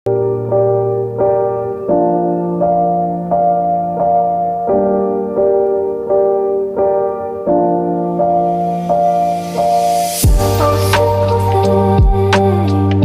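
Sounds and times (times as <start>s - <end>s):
gentle piano chords: 0.1s - 13.0s.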